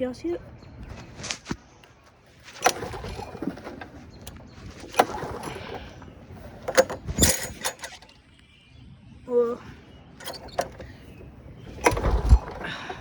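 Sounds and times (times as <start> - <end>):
rustling: 0.8 - 8.0.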